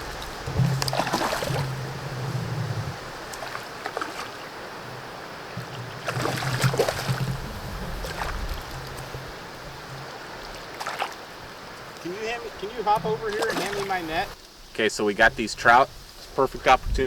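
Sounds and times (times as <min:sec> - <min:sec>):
river water running: 0:00.0 - 0:16.8.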